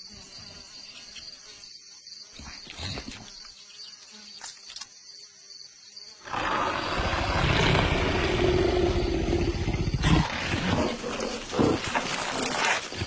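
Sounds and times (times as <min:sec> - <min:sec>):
animal roar: 0:06.2 - 0:13.0.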